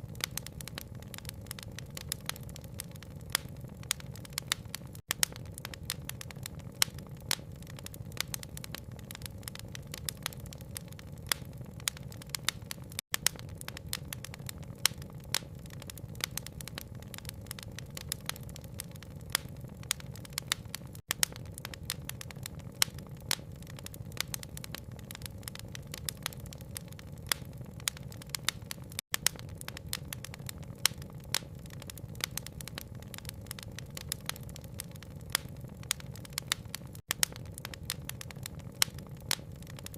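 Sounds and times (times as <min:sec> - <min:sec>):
rain patter: 0:00.0 - 0:39.9
wood fire crackling: 0:00.0 - 0:39.9.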